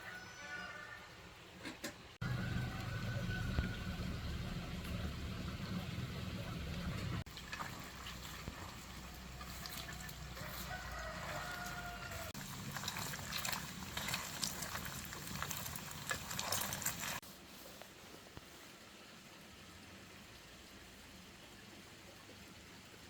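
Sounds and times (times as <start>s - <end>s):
farm animal sounds: 0.0s - 1.1s, 9.2s - 12.3s
low hum: 2.2s - 7.3s.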